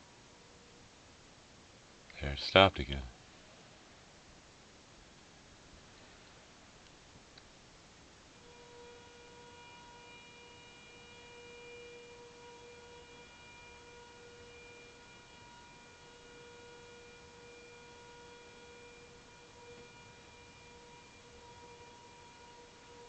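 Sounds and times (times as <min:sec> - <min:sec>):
faint horn-like drone: 0:08.4 - 0:23.0.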